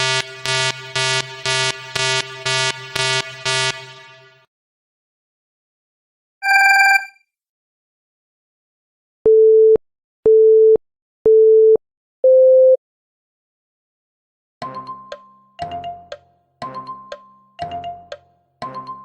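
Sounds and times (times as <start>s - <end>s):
electronic countdown beeps: 6.4s - 7.1s
short bright electronic tone: 6.4s - 7.1s.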